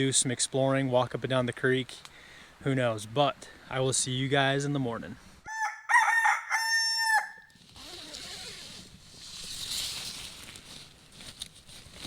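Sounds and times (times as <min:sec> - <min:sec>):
faint steady hiss: 0:00.0 - 0:05.4
rooster crowing: 0:05.5 - 0:07.5.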